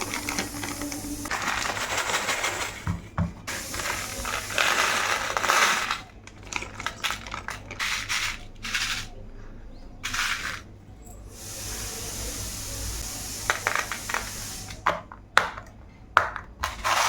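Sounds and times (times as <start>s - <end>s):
packaging crinkling: 0.0s - 8.8s.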